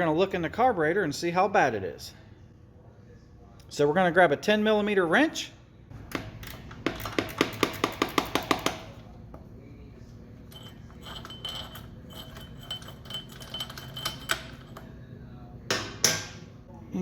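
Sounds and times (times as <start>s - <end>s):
metallic clinks and taps: 10.5s - 14.9s.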